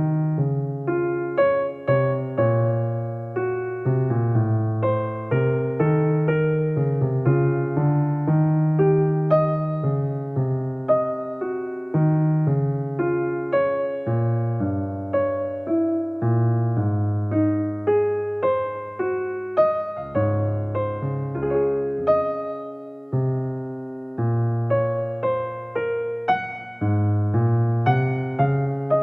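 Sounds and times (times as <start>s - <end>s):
piano music: 0.0s - 29.0s.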